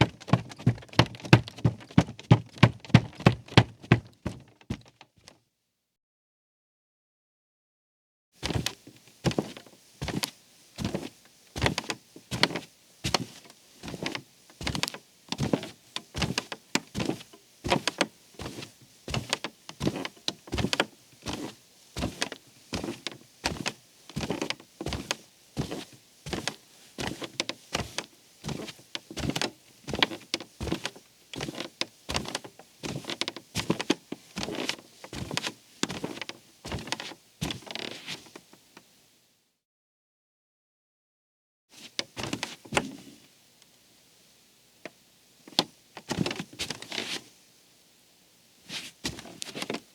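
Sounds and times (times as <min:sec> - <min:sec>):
barefoot footsteps on creaky floor: 0:00.0 - 0:05.4, 0:08.4 - 0:38.4, 0:41.8 - 0:43.1, 0:45.5 - 0:47.2, 0:48.7 - 0:49.9.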